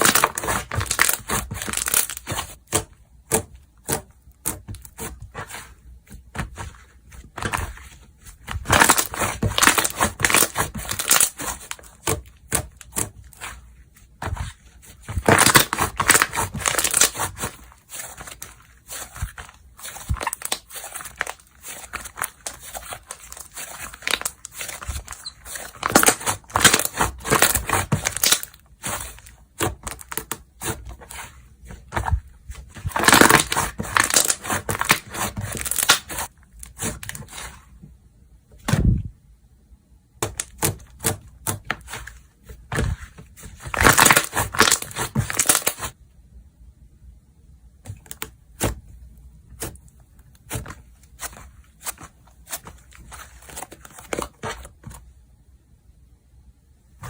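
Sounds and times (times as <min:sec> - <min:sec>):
slime squished by hand: 0:14.2 - 0:37.6.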